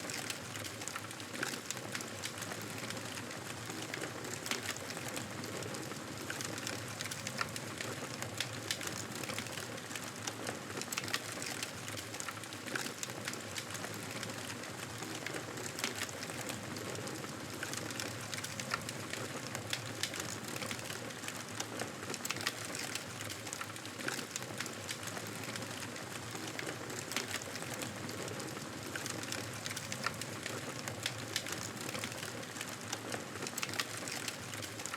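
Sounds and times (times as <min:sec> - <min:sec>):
campfire crackling and popping: 0:22.1 - 0:34.9.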